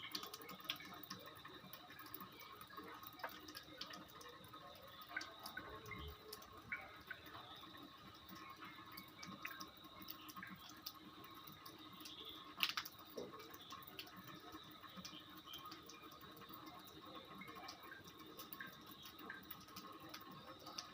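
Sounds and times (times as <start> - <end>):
water dripping: 0.0 - 20.9.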